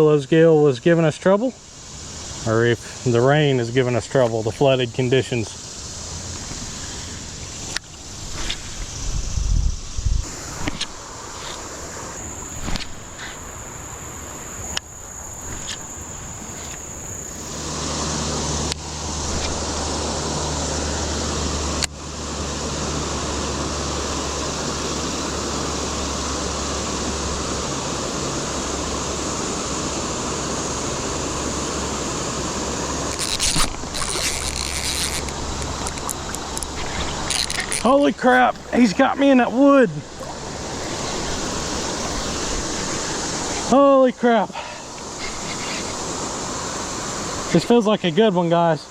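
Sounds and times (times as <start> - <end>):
high insect buzz: 1.5 - 48.2
rushing flooded creek: 10.2 - 48.9.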